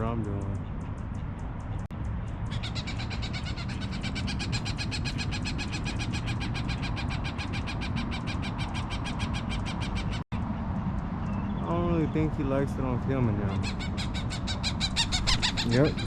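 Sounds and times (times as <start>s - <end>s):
bird alarm call notes: 2.3s - 10.2s, 13.4s - 16.0s.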